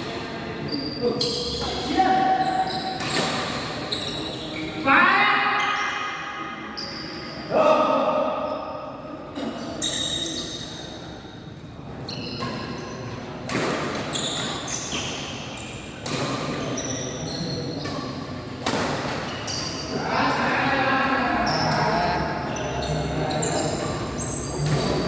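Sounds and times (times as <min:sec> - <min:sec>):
shoe squeaks on court: 0:00.6 - 0:04.8, 0:06.7 - 0:07.4, 0:09.7 - 0:11.4, 0:12.0 - 0:18.3, 0:19.1 - 0:20.0, 0:21.4 - 0:25.0
players' voices: 0:19.9 - 0:25.0.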